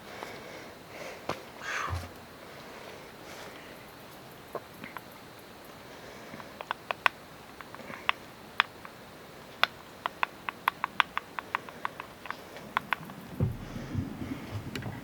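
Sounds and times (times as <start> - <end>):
handling thuds and rustling: 1.3 - 2.4, 13.1 - 15.0
pistol loading taps and clicks: 6.4 - 9.0, 9.6 - 13.1.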